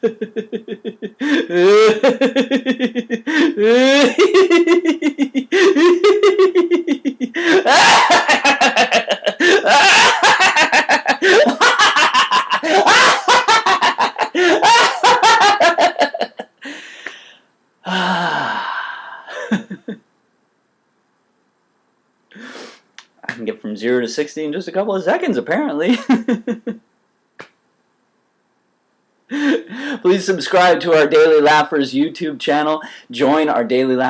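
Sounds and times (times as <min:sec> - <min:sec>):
man laughing: 0:00.0 - 0:16.8, 0:17.9 - 0:20.0, 0:25.9 - 0:26.8
gasping breath: 0:01.2 - 0:01.8, 0:03.2 - 0:03.9, 0:07.3 - 0:07.7, 0:16.6 - 0:19.4.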